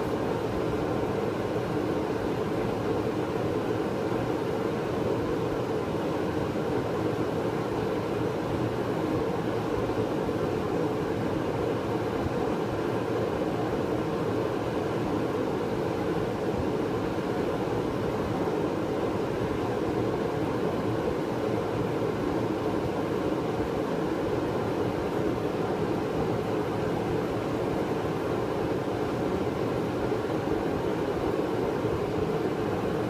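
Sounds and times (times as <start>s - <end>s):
heater blower and burner roar: 0.0s - 33.0s.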